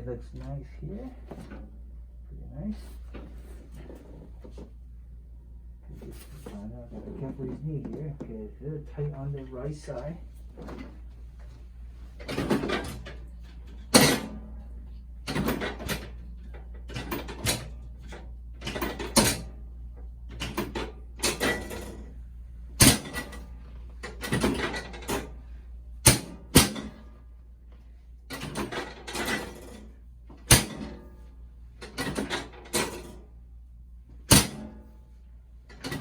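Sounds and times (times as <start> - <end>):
rustling and shuffling on table: 0.3 - 1.6, 2.7 - 4.8, 5.9 - 8.3.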